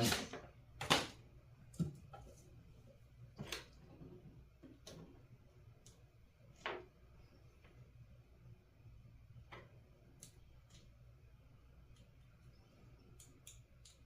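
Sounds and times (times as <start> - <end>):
faint low hum: 0.0 - 14.0
light clicks and taps of parts: 11.8 - 14.0.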